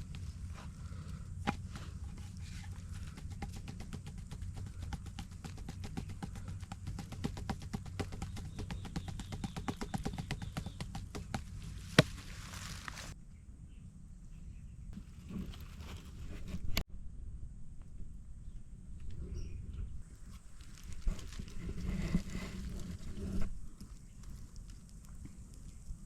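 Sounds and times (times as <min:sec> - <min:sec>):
steady low hum: 0:00.0 - 0:09.5.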